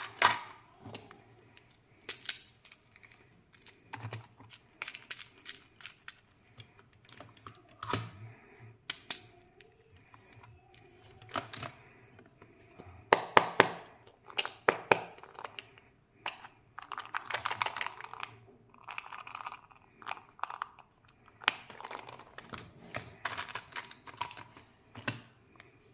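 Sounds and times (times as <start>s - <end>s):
plastic capsules clicking: 1.6s - 8.1s, 13.5s - 25.3s.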